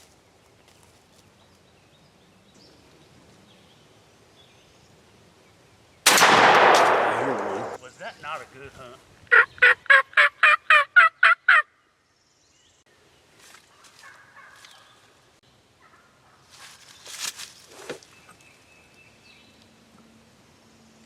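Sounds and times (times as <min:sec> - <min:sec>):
turkey gobbling: 0:09.3 - 0:11.7.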